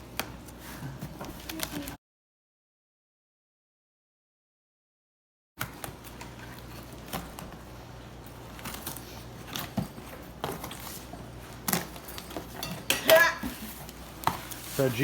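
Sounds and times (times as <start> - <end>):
low electrical hum: 5.6 - 15.0.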